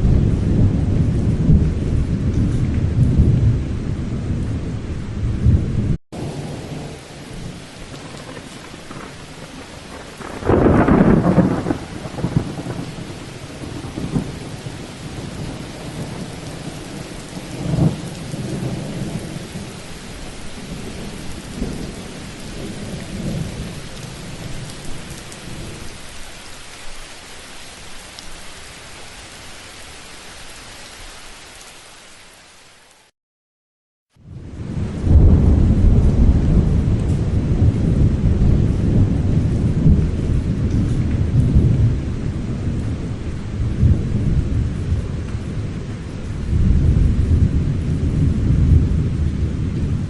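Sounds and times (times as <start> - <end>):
loud thunderclap: 0.0 - 19.7, 34.3 - 50.0
rolls of thunder: 0.0 - 19.8, 34.3 - 50.0
steady rain: 0.0 - 33.1, 34.2 - 50.0.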